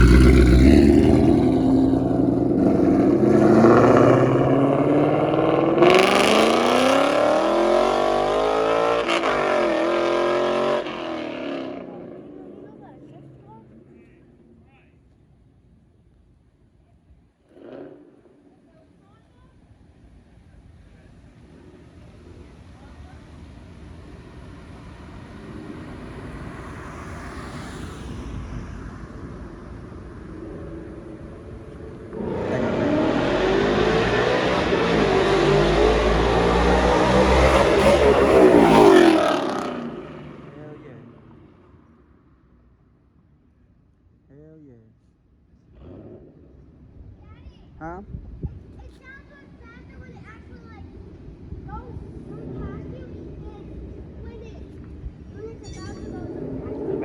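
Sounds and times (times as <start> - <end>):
car engine accelerating hard: 0.0 - 14.3, 21.0 - 41.6, 56.2 - 57.0.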